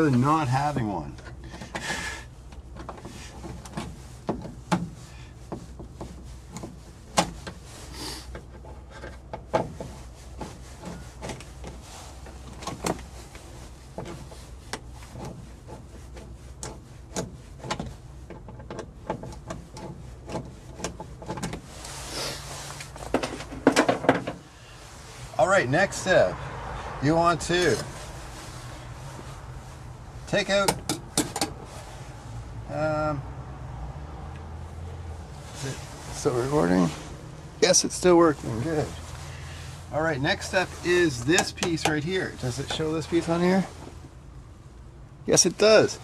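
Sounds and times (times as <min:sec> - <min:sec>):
rubbing scrape: 0:03.0 - 0:23.6, 0:27.4 - 0:30.4, 0:31.0 - 0:32.4.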